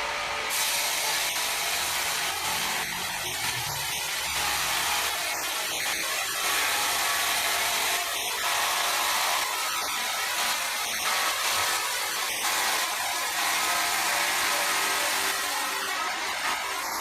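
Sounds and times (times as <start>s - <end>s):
power saw whining: 0.0s - 17.0s.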